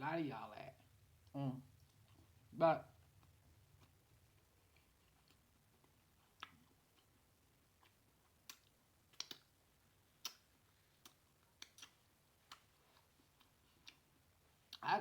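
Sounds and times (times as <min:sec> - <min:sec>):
eating clicks and smacks: 0:03.2 - 0:14.1.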